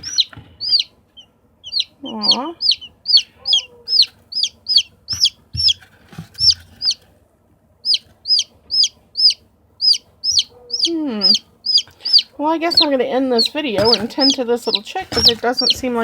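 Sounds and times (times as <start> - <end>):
chick peeping: 0.0 - 7.1, 7.8 - 16.0
soft bumps: 5.0 - 7.1, 12.0 - 16.0.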